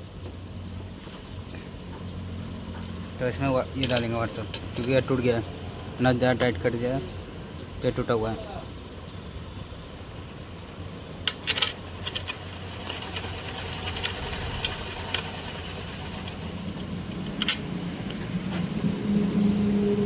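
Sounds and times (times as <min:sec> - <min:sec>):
small metal parts clicking: 0:10.3 - 0:18.6.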